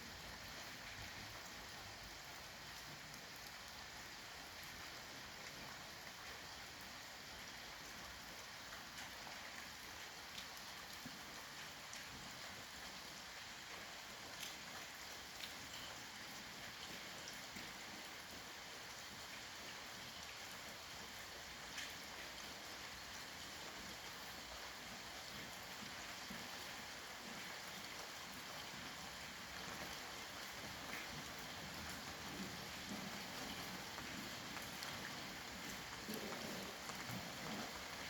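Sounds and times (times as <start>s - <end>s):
steady rain hiss: 0.0s - 38.0s.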